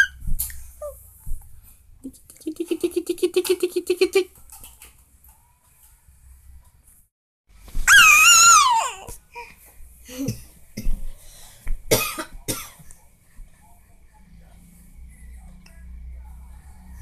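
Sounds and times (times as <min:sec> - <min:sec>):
baby squealing: 0:07.9 - 0:09.1
sharp coughing vocal sounds: 0:11.9 - 0:12.8.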